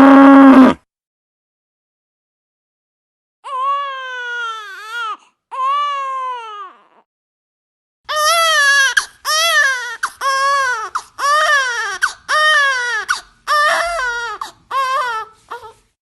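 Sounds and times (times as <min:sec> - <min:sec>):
baby crying: 0:03.4 - 0:07.1, 0:08.1 - 0:15.8.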